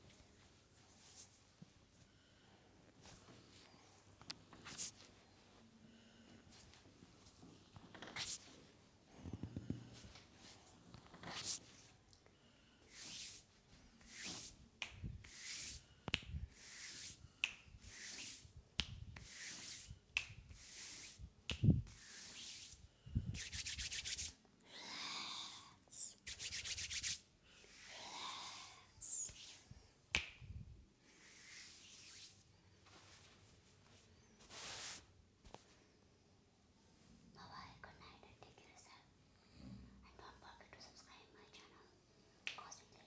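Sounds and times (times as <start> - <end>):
hands rubbing oiled skin: 12.9 - 24.4, 26.2 - 27.3, 29.1 - 30.3
sharp snaps: 16.1 - 16.4, 17.4 - 17.8, 18.8 - 19.3, 20.1 - 20.5, 21.5 - 21.8, 30.1 - 30.6, 42.4 - 42.8.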